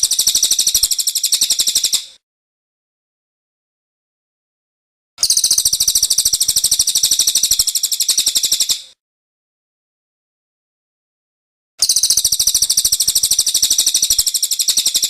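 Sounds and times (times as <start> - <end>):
songbird trill: 0.0 - 2.2, 5.2 - 9.0, 11.8 - 15.0.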